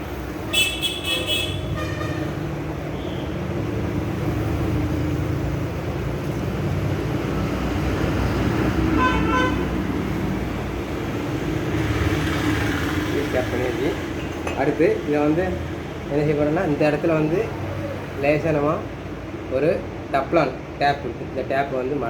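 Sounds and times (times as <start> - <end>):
background traffic: 0.0 - 22.0
vehicle horn tooting: 0.5 - 2.4, 8.9 - 9.8.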